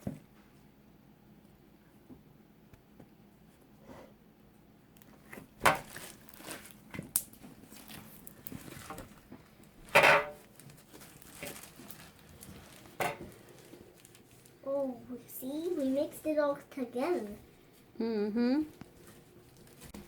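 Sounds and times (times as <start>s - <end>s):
slime squishing and crackling: 5.1s - 14.9s.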